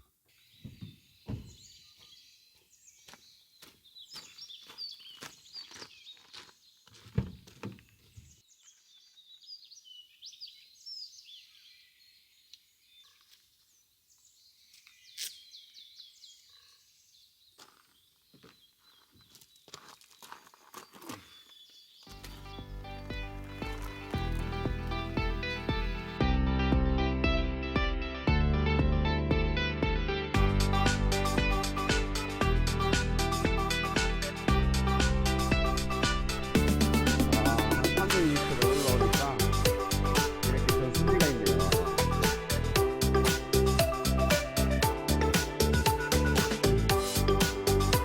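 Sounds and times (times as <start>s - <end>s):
small birds chirping: 0.0s - 22.6s
footsteps on a path: 0.6s - 9.4s, 17.4s - 25.9s.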